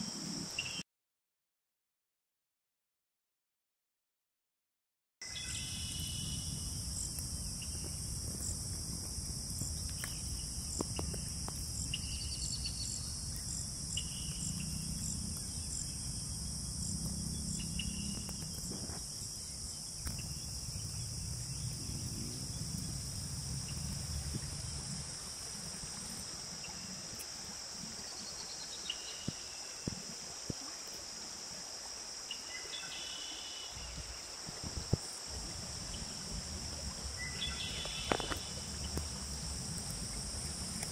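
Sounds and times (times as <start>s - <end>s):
insects chirping chorus: 5.2s - 40.9s
low rumble: 20.1s - 25.2s.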